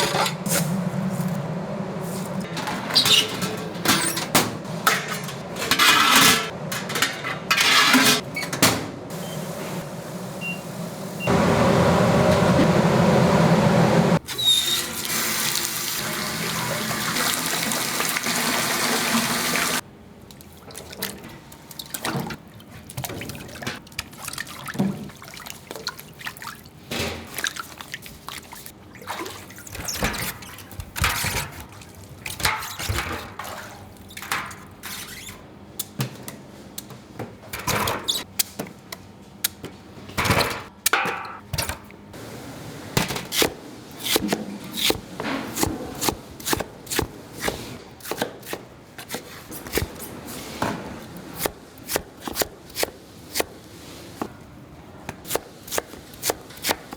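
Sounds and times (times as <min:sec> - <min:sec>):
running water: 0:15.4 - 0:19.8.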